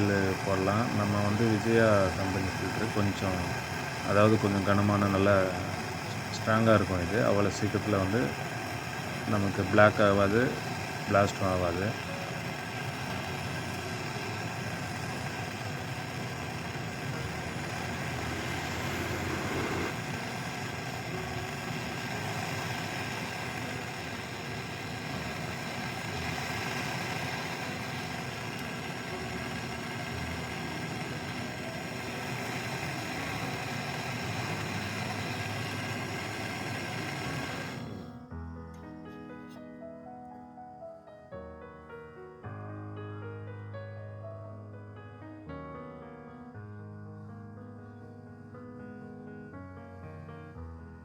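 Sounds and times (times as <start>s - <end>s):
steady mechanical drone: 0.0s - 38.5s.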